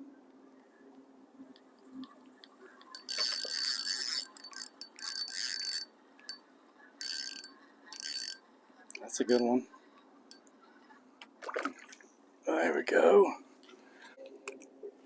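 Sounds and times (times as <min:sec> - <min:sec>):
fishing reel whirring: 0:02.8 - 0:06.4, 0:07.0 - 0:08.4.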